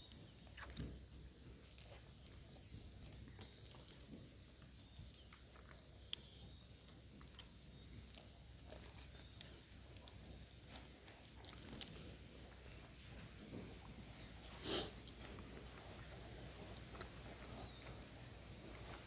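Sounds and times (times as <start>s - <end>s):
wet mouth chewing clicks: 0.0s - 19.0s.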